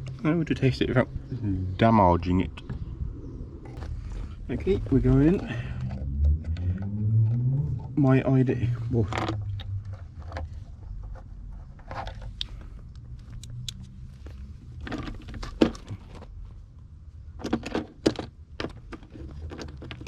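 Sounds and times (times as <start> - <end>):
wires and metal parts rattling: 3.7 - 16.4, 17.3 - 20.0.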